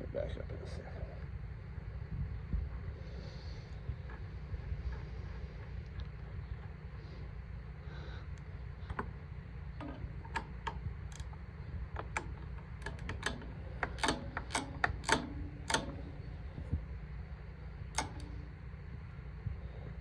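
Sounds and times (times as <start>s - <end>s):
steady low rumble: 0.0s - 20.0s
wrench clicking on bolt: 8.8s - 16.4s, 17.9s - 18.6s.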